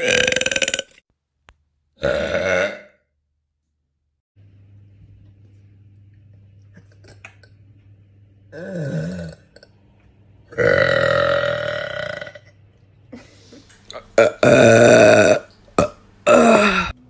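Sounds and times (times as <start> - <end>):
woman belching loudly: 0.0 - 0.9, 2.0 - 3.0, 8.5 - 9.7, 10.5 - 12.5, 14.2 - 17.0.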